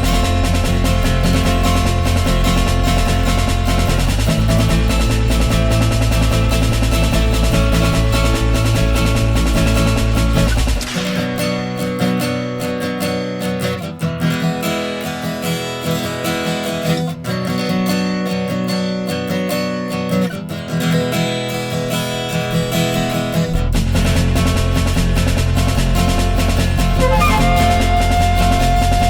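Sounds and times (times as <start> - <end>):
heavy bass: 0.0 - 11.9, 23.5 - 29.0
strummed acoustic guitar music: 0.0 - 29.0.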